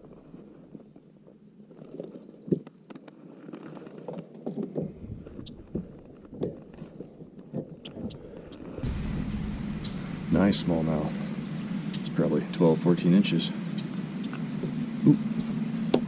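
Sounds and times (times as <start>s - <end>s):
knocks and clatter on a kayak: 1.9s - 8.4s.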